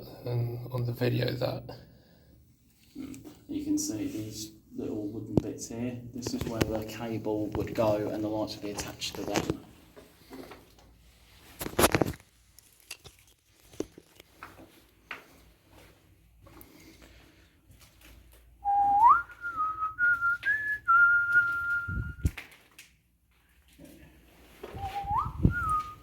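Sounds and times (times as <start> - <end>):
person whistling: 18.6 - 22.3, 24.8 - 26.0.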